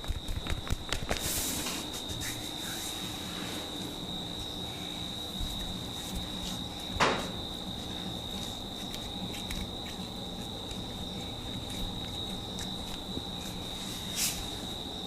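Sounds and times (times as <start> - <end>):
crackling rustle of hair: 0.0 - 4.4, 7.7 - 14.8.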